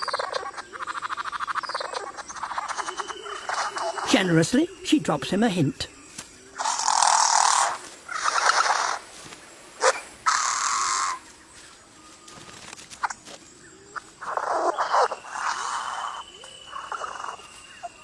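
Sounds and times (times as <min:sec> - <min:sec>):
bird harsh rasping calls: 0:00.0 - 0:09.1, 0:09.8 - 0:11.2, 0:14.2 - 0:18.0.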